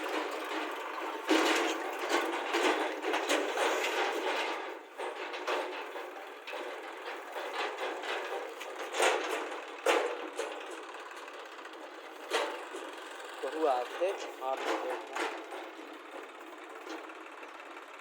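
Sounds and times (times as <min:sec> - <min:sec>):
mechanical clattering and rattling: 0:00.0 - 0:18.0.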